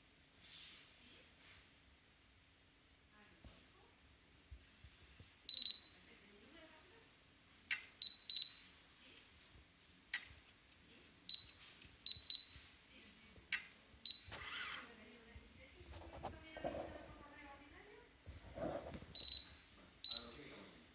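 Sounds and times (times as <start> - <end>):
short high beeps: 19.2 - 20.2.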